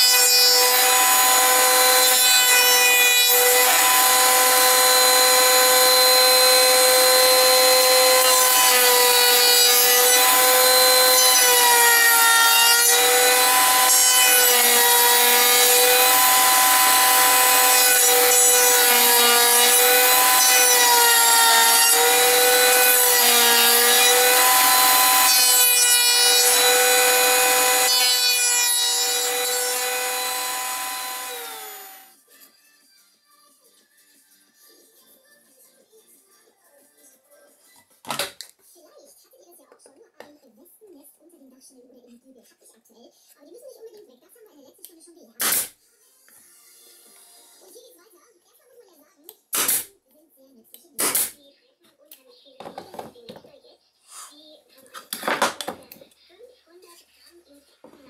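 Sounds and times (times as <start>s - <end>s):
router milling wood whine: 0.0s - 32.1s.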